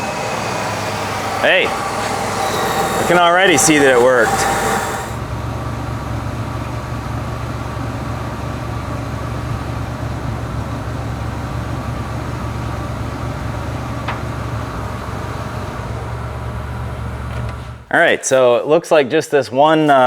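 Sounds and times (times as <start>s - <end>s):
truck engine idling: 0.0s - 5.2s.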